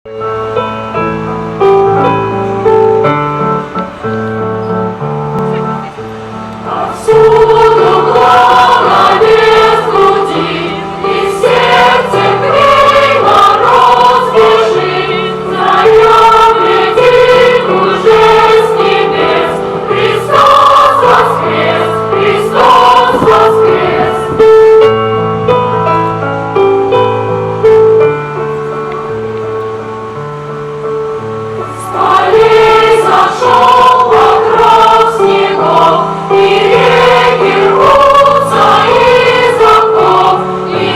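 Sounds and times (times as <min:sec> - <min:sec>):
choir singing a sacred song: 0:05.5 - 0:25.0, 0:31.1 - 0:40.9.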